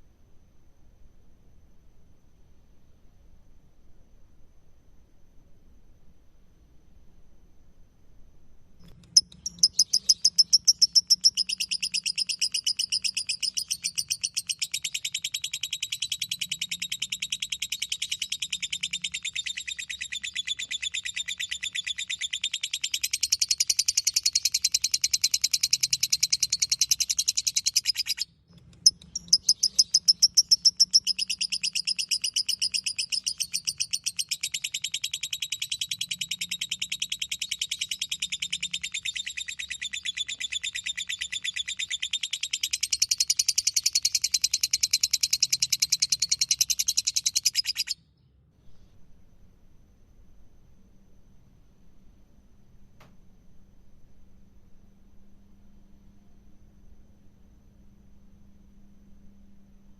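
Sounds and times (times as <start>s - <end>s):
lovebird chattering: 9.0s - 48.0s.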